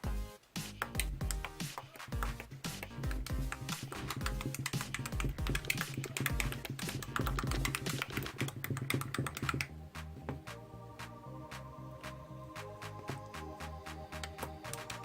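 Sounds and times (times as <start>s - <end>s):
electronic music: 0.0s - 15.0s
slime squishing with clicks and pops: 2.2s - 9.7s.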